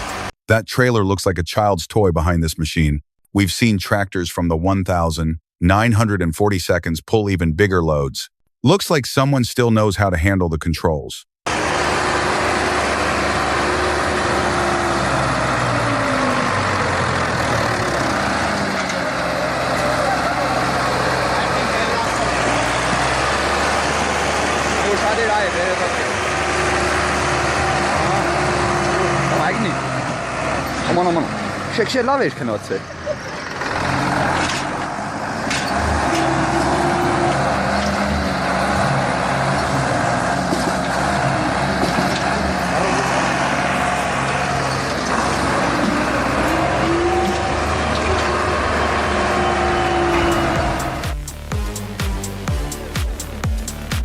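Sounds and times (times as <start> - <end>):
heavy vehicle engine running: 0.0 - 0.4, 11.5 - 54.0.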